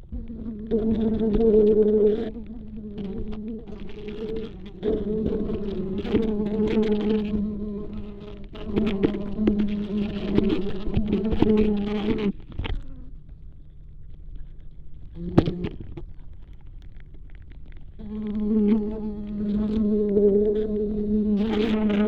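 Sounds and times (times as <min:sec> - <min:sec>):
flies buzzing: 0:00.1 - 0:13.2, 0:18.0 - 0:22.0.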